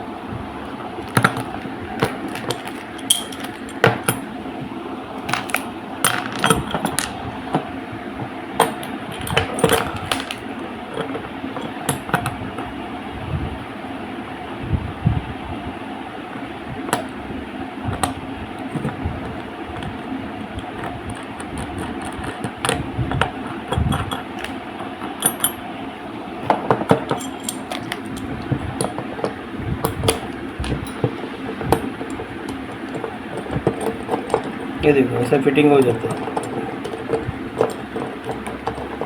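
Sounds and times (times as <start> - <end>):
steady background hum: 0.0 - 39.0
small metal parts clicking: 1.0 - 4.3, 5.2 - 7.7, 8.6 - 12.7, 17.9 - 25.6, 26.4 - 39.0.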